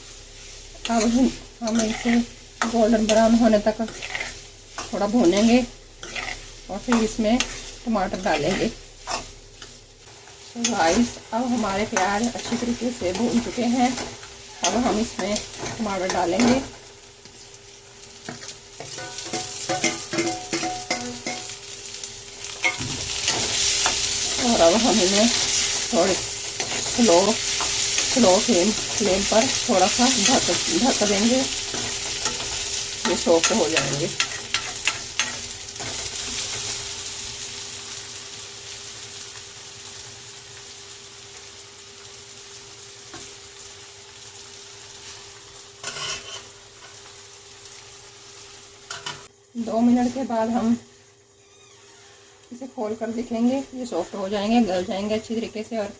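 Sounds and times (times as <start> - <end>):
hot oil sizzling: 0.0 - 55.9
spatula scraping metal pan: 1.0 - 9.2, 45.8 - 46.5.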